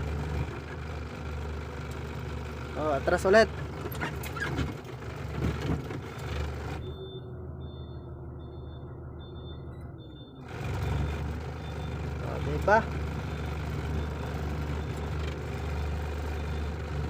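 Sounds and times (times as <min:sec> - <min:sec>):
truck engine running: 0:00.0 - 0:17.0
faint reversing alarm beeping: 0:06.8 - 0:15.2.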